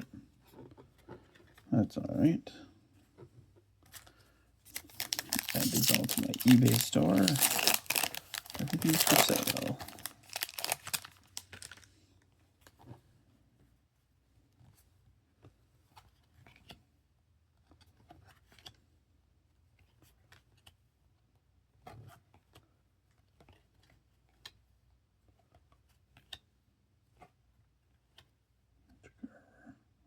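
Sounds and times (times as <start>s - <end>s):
trading cards clicking and scraping: 4.7s - 11.8s.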